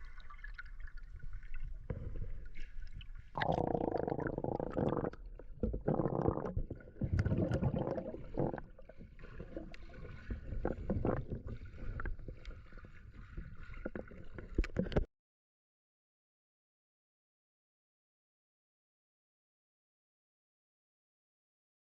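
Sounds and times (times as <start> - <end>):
water sloshing and splashing: 0.0 - 15.1.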